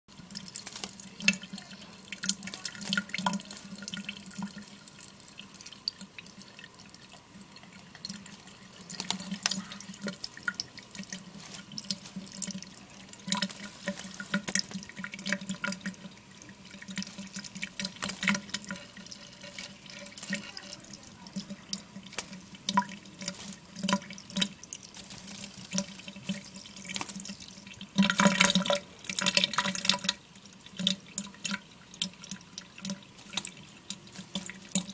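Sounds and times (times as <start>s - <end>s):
bird splashing in water: 0.3s - 4.8s, 8.1s - 30.1s.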